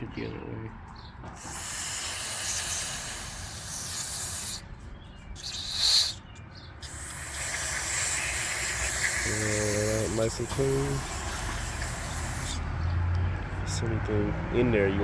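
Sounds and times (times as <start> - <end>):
aerosol spray hissing: 1.4 - 4.6, 5.4 - 6.2, 6.8 - 12.7.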